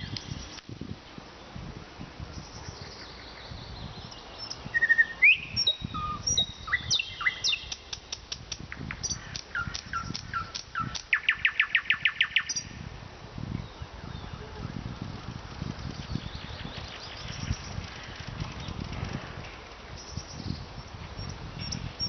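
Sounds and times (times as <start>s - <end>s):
nightingale singing: 0.0s - 0.7s, 2.3s - 12.8s, 19.9s - 22.0s.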